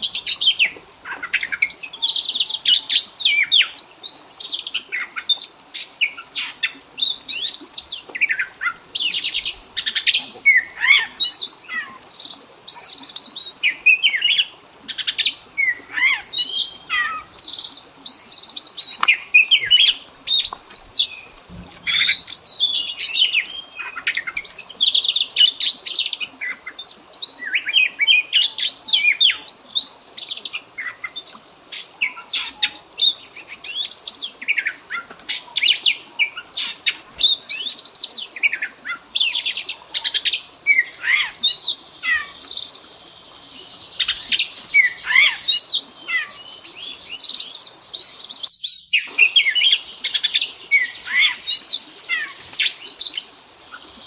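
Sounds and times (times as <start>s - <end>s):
bird singing varied whistles: 16.1s - 25.2s.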